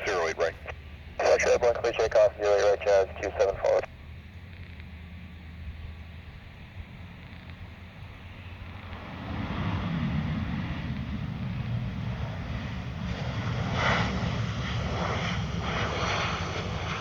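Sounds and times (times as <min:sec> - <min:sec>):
aircraft engines rumbling: 0:00.0 - 0:17.0
rushing gusts: 0:08.4 - 0:17.0.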